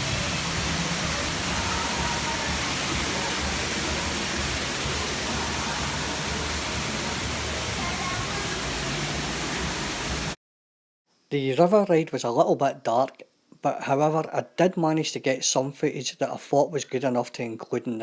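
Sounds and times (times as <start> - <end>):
water rushing and falling: 0.0 - 10.4.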